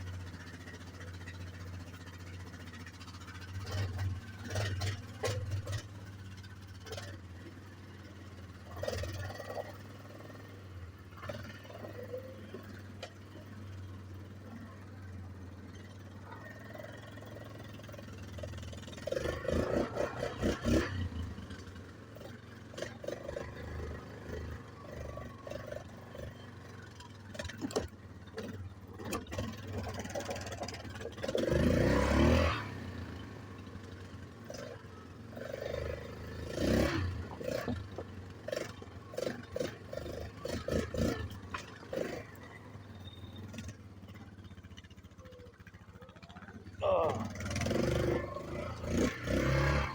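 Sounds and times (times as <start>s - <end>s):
atv engine idling: 0.0s - 49.9s
engine revving: 3.4s - 6.0s, 8.6s - 12.8s, 16.2s - 26.6s, 27.3s - 33.6s, 34.4s - 43.8s, 46.2s - 49.9s.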